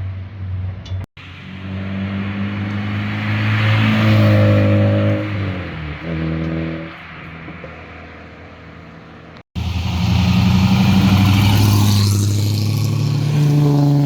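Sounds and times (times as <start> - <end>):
car accelerating past: 1.2 - 7.0, 9.6 - 14.0.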